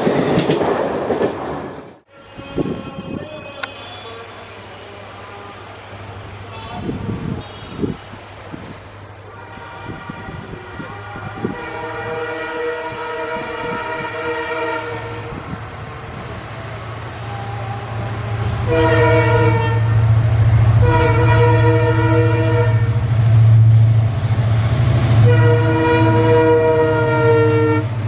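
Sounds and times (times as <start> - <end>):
locomotive air horn blasts: 7.2 - 8.1, 9.3 - 15.5, 17.2 - 23.0, 25.2 - 28.0.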